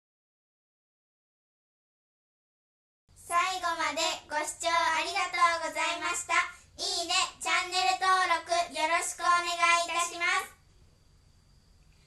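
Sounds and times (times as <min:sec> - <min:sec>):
child-like voice singing: 0:03.3 - 0:10.6.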